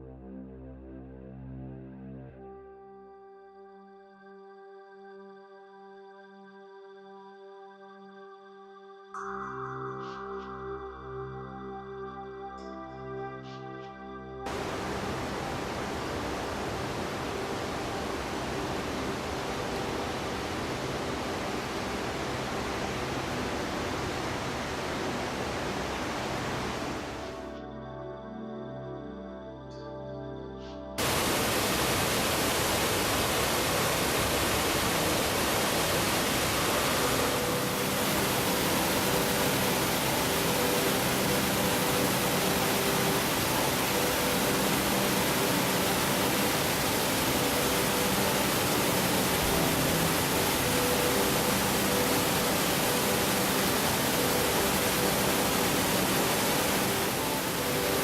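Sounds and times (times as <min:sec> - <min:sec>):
waterfall rushing: 0:14.5 - 0:27.5, 0:31.0 - 0:58.0.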